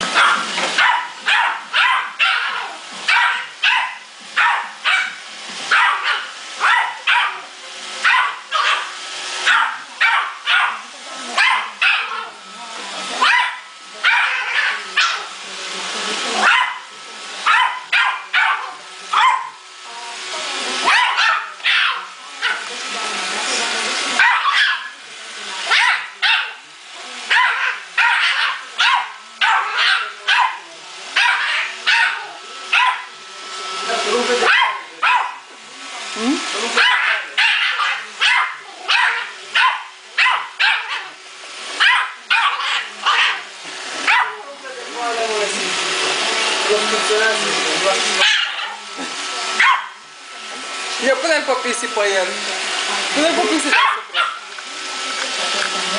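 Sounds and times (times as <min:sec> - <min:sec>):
robot vacuum whirring: 0:00.0 - 0:55.9
small dog barking: 0:00.1 - 0:10.8, 0:11.4 - 0:12.4, 0:13.2 - 0:15.3, 0:16.4 - 0:19.6, 0:20.8 - 0:22.7, 0:24.2 - 0:24.9, 0:25.7 - 0:26.6, 0:27.3 - 0:33.2, 0:34.4 - 0:35.4, 0:36.8 - 0:41.2, 0:41.8 - 0:44.4, 0:48.2 - 0:48.8, 0:49.6 - 0:50.0, 0:53.6 - 0:54.4.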